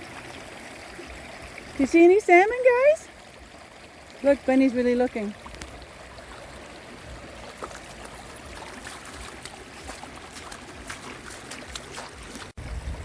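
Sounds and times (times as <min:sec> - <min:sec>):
creek water running over stones: 0:00.0 - 0:13.0
dogs splashing in water: 0:04.2 - 0:12.6.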